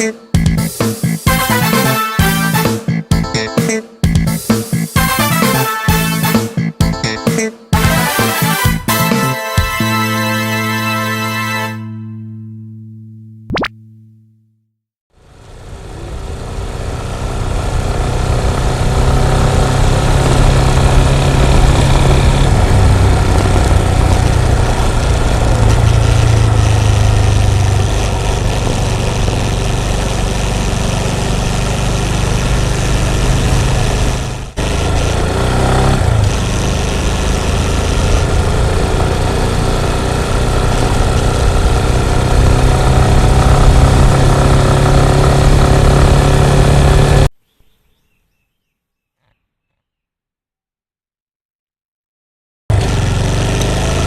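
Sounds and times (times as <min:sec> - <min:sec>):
motorcycle engine running: 0:00.4 - 0:03.3, 0:15.2 - 0:47.3, 0:52.7 - 0:54.0.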